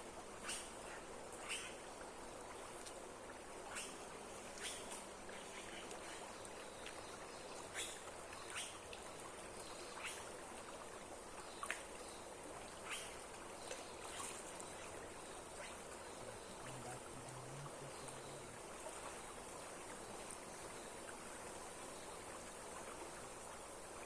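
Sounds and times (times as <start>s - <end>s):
sharp ticks or splashes: 3.6s - 10.4s
water rushing: 12.4s - 24.0s.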